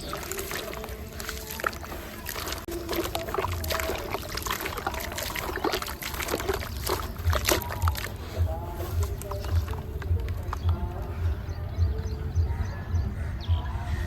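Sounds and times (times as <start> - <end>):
concrete crumbling in water: 0.0 - 10.9.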